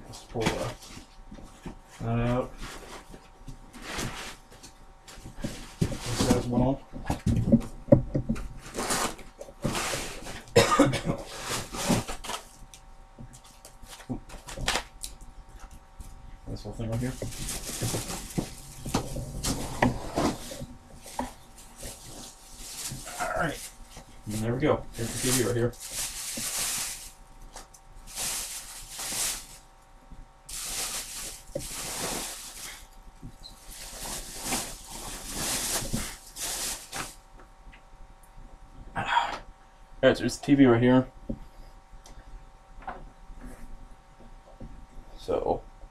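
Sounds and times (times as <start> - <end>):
packing material rustling: 8.6 - 10.5, 16.8 - 29.6, 30.5 - 37.2.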